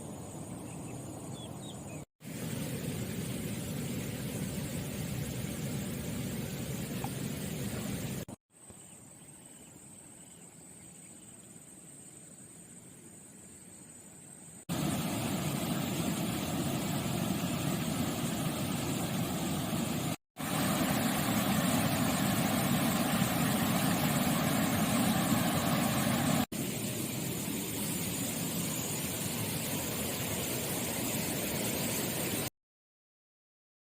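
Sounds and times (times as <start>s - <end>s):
low rushing noise: 14.7s - 32.5s.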